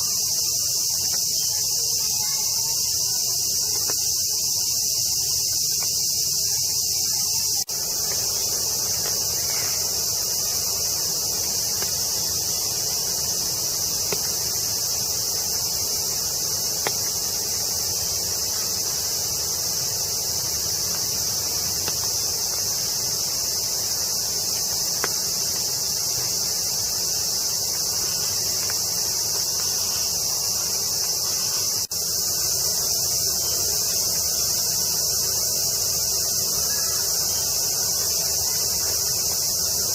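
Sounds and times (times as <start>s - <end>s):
high-pitched insect chorus: 0.0s - 39.9s.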